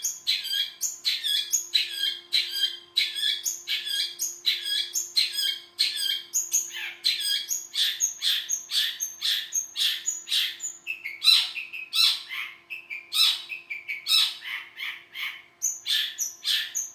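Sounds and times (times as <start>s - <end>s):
bird singing harsh notes: 0.0s - 16.9s.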